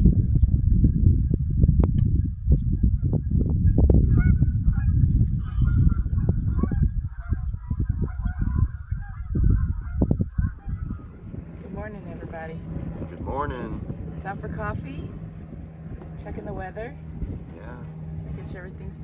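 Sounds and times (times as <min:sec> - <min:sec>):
wind buffeting microphone: 0:00.0 - 0:19.0
geese honking: 0:04.0 - 0:11.9.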